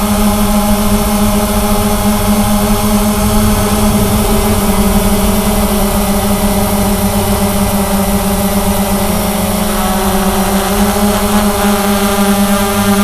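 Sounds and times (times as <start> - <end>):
quadcopter motors droning: 0.0 - 13.0.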